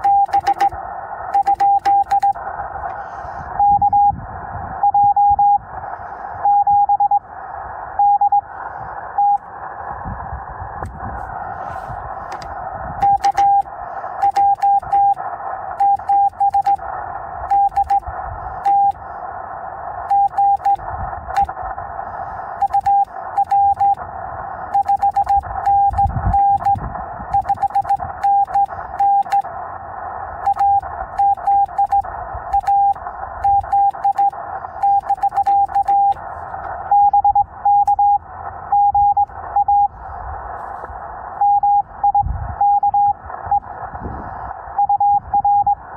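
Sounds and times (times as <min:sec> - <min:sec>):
morse code beeps: 0:00.0 - 0:02.4, 0:03.6 - 0:04.2, 0:04.8 - 0:05.6, 0:06.4 - 0:07.2, 0:08.0 - 0:08.5, 0:09.2 - 0:09.4, 0:12.3 - 0:15.2, 0:15.8 - 0:16.8, 0:17.5 - 0:19.0, 0:20.1 - 0:21.6, 0:22.6 - 0:24.0, 0:24.7 - 0:29.5, 0:30.4 - 0:36.2, 0:36.8 - 0:39.9, 0:41.4 - 0:43.8, 0:44.8 - 0:45.9
radio band hiss: 0:00.0 - 0:45.9.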